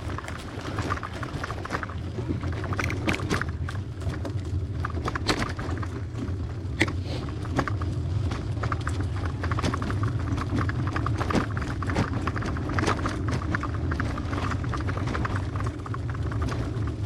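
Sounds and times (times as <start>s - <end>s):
bicycle clicks and rattles: 0.0s - 8.0s
bicycle rumbling on dirt trail: 0.0s - 17.0s.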